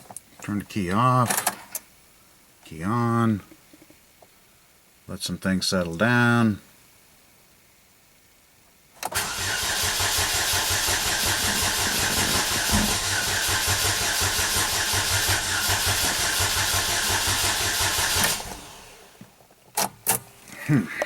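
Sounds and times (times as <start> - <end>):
car engine cranking: 9.1 - 19.2.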